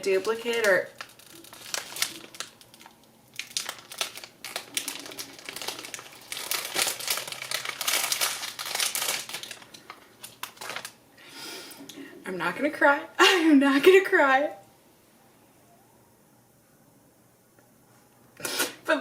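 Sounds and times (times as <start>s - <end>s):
packaging crinkling: 0.0s - 11.0s.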